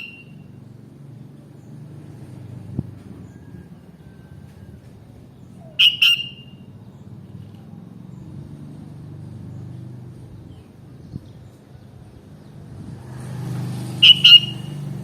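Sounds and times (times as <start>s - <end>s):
bird sharp call notes: 5.6s - 6.7s, 14.0s - 15.0s.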